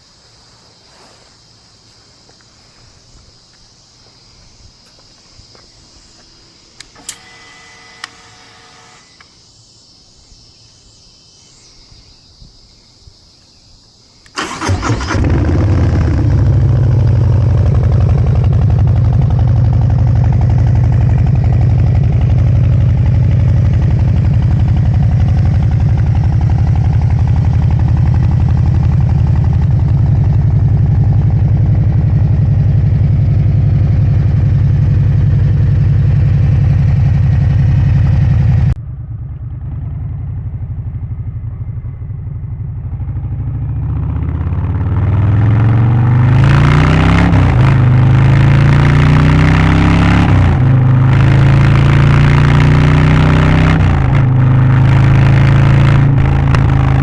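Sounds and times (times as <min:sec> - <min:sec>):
insects chirping: 0:00.0 - 0:37.6
motorcycle engine starting and idling: 0:06.5 - 0:09.4, 0:14.2 - 0:57.0
brief whine: 0:06.8 - 0:09.4
clicks: 0:06.8 - 0:09.4.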